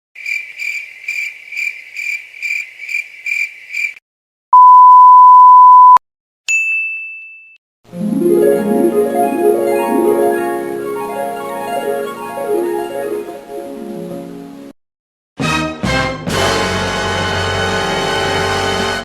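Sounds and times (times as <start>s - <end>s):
cricket chirping: 0.2s - 4.0s
censor beep: 4.5s - 6.0s
harp and piano arpeggio: 7.9s - 14.7s.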